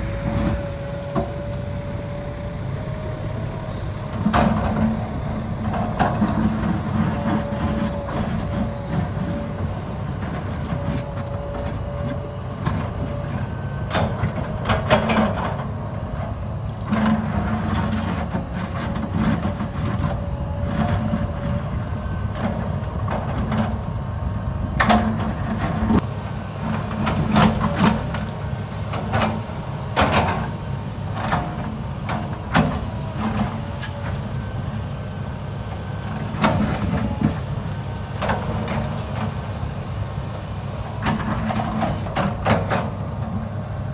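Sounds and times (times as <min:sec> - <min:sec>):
heavy machinery engine drone: 0:00.0 - 0:43.9.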